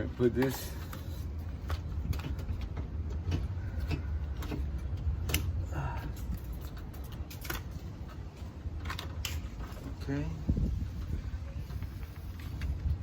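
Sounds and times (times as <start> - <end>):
steady low rumble: 0.0 - 13.0
clicks and knocks of car door parts: 1.4 - 10.0.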